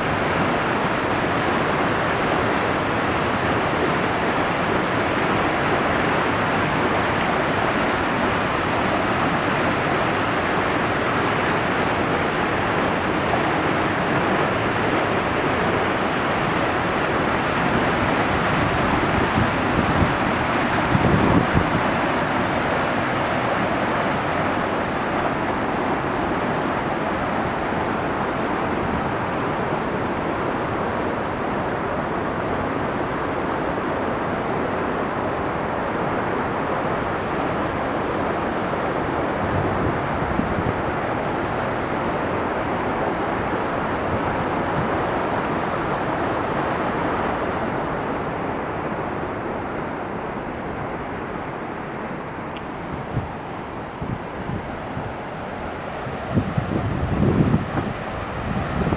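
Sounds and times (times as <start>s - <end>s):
waterfall rushing: 0.0s - 29.5s, 51.0s - 58.9s.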